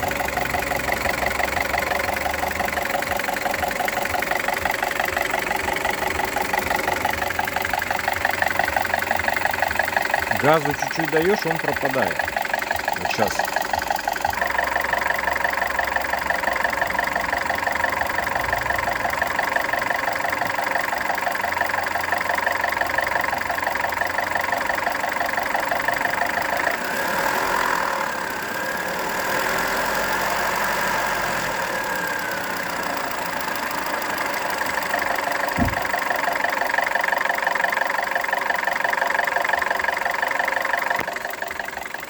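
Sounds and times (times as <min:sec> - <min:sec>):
car engine idling with knock: 0:00.0 - 0:42.0
short low thump: 0:35.6 - 0:35.8.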